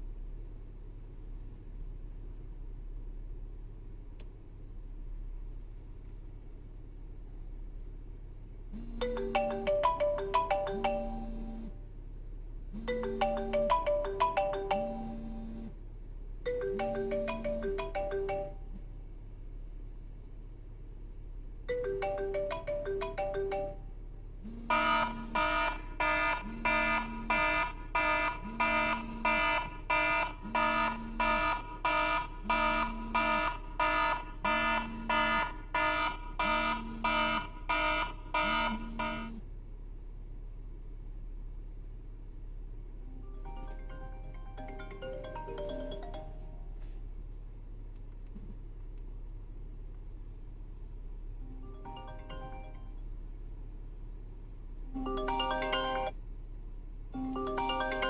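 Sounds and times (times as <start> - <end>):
low tone: 8.8 - 11.8, 12.8 - 15.8, 16.5 - 18.9
melodic phone ringtone: 8.8 - 11.8, 12.8 - 15.8, 16.5 - 18.8, 21.7 - 39.4, 43.1 - 47.0, 51.4 - 53.0, 54.9 - 56.2, 57.2 - 58.0
repeating beeping ringtone: 8.8 - 11.8, 12.8 - 15.8, 16.5 - 18.7, 21.7 - 23.9, 24.5 - 39.4, 43.1 - 46.9, 51.4 - 53.0, 54.9 - 56.1, 57.2 - 58.0.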